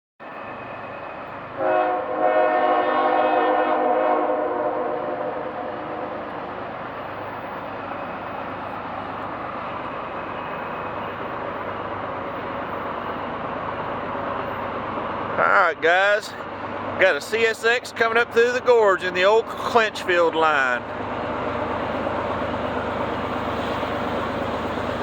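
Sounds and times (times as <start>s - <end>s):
train running noise: 0.2s - 25.0s
locomotive air horn chord: 1.6s - 6.2s.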